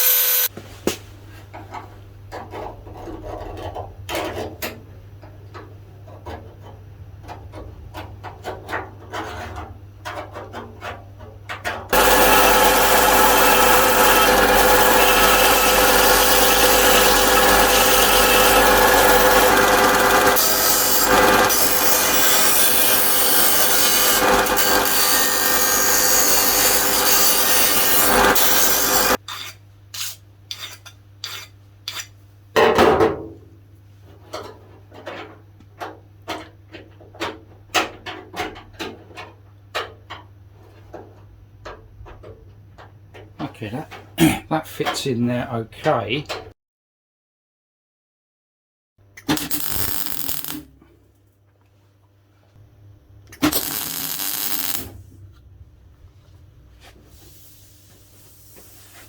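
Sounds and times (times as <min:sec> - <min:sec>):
power grinder on sheet steel: 0:00.0 - 0:00.5, 0:11.9 - 0:29.2, 0:49.4 - 0:50.6, 0:53.4 - 0:54.9.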